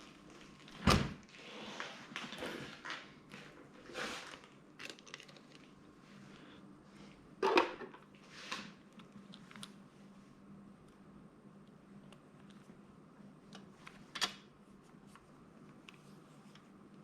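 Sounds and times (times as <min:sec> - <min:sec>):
handling rustles and clicks: 0:04.2 - 0:05.8.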